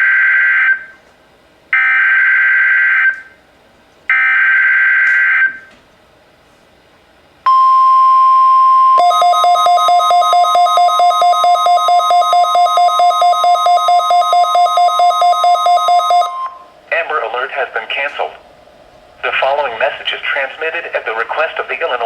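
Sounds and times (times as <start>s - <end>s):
rapid beeping alarm: 7.5s - 16.7s
steady warning alert tone: 7.5s - 16.7s
screeching digital data bursts: 9.0s - 16.4s.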